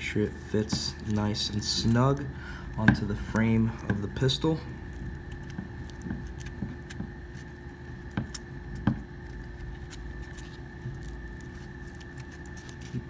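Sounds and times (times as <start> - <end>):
faint background hum: 0.0 - 13.0
handling clicks and rubs: 0.6 - 13.0.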